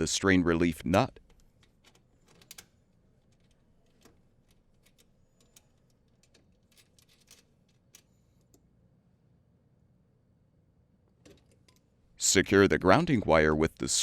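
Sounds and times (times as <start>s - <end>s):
small parts clicking and scraping: 1.2s - 8.6s.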